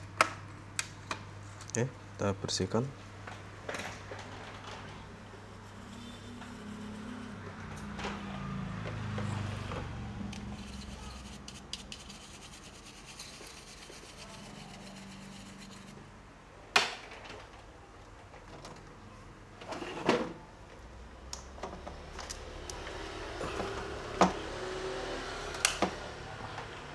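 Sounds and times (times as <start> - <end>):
rubbing and scrubbing: 10.4 - 16.0.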